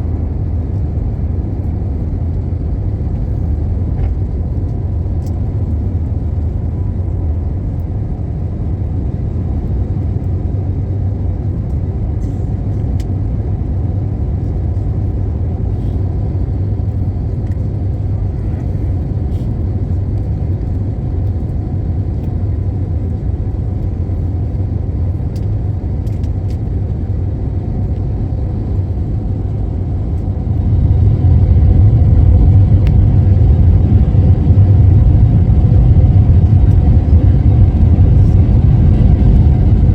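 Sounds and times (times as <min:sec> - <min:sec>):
low rumble: 0:00.0 - 0:39.9.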